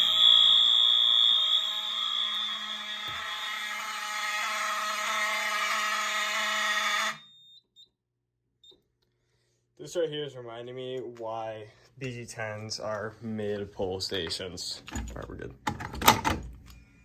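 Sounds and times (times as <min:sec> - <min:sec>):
fire alarm horns blaring: 0:00.0 - 0:07.6.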